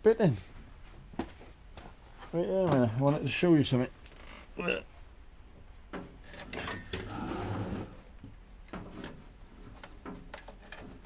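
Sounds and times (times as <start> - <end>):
rumbling scrape: 7.0 - 8.1
sharp clicks and knocks: 8.2 - 11.0.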